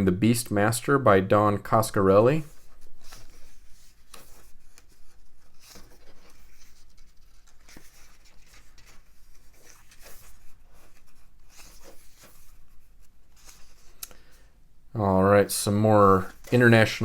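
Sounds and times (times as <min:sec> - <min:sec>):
pages rustling: 0:02.2 - 0:14.4, 0:16.0 - 0:17.0.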